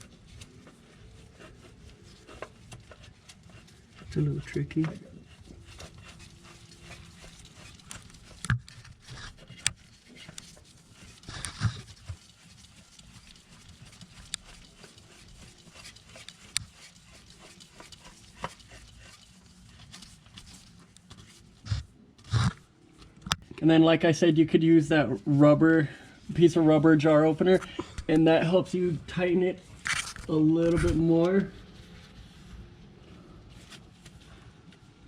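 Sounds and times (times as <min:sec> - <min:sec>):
hands spinning oil filter: 0:00.0 - 0:21.6.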